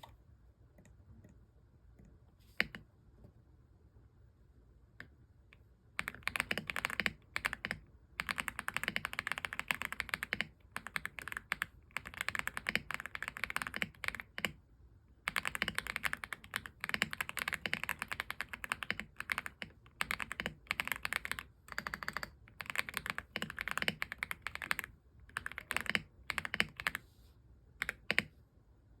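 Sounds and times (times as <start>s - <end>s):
mechanical keyboard typing: 6.0s - 14.6s, 15.3s - 27.0s, 27.8s - 28.3s.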